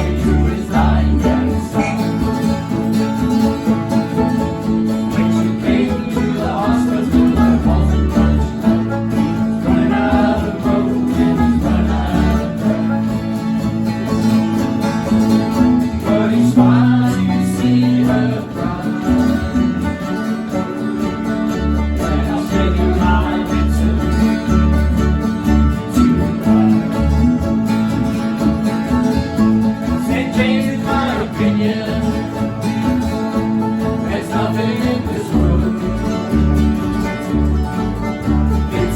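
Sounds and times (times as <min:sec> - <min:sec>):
person singing: 0:00.0 - 0:02.5, 0:05.1 - 0:08.8, 0:09.6 - 0:13.1, 0:16.0 - 0:19.6, 0:21.9 - 0:24.6, 0:29.9 - 0:32.7, 0:34.0 - 0:36.3, 0:38.6 - 0:38.9
acoustic guitar picking: 0:00.0 - 0:38.9
banjo picking: 0:00.0 - 0:38.9
bass line: 0:00.0 - 0:38.9.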